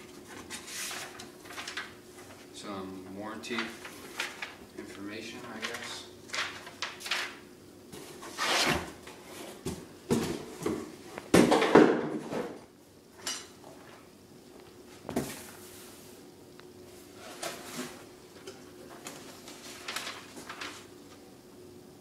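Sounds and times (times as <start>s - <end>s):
paper and cardboard rustling: 0.0s - 2.5s, 3.5s - 7.3s, 17.1s - 18.1s, 18.8s - 20.9s.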